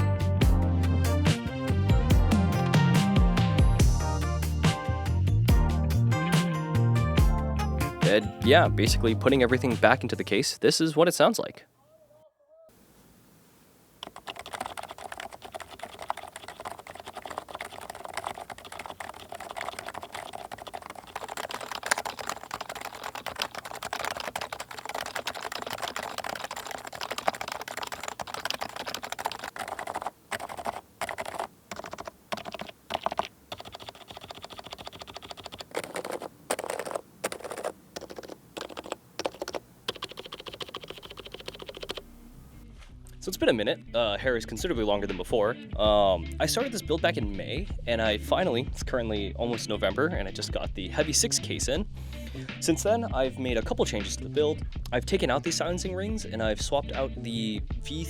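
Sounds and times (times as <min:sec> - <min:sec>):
keyboard typing: 0:14.0 - 0:42.1.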